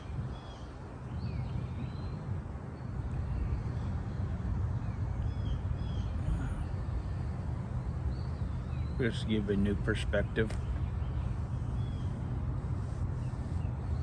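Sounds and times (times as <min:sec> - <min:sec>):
birds chirping: 0:00.0 - 0:14.0.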